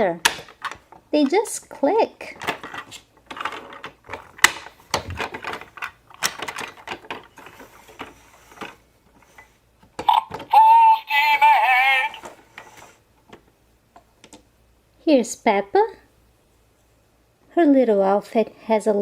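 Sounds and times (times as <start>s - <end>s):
toy electronic sound: 10.0s - 12.2s.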